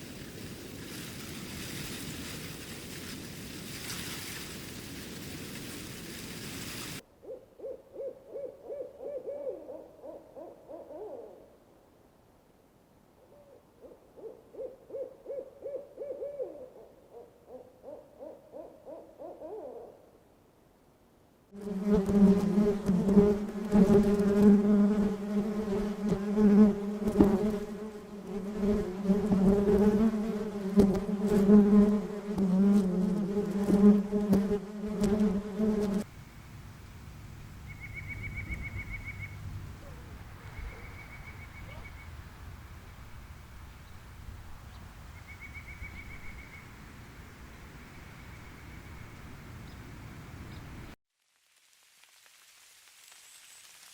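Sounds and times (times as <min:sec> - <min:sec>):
owl hooting: 0:07.2 - 0:11.5, 0:13.2 - 0:20.0, 0:37.7 - 0:42.1
bees buzzing: 0:21.6 - 0:36.1
jungle ambience: 0:33.4 - 0:53.9.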